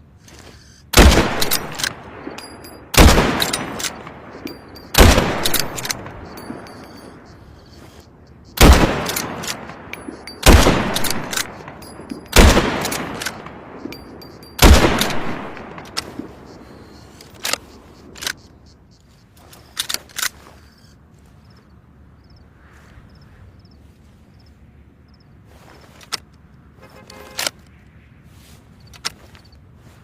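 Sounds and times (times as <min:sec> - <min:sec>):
sharp metallic clicks: 0:00.1 - 0:21.0
rifle shots echoing: 0:00.9 - 0:07.8, 0:08.5 - 0:18.2.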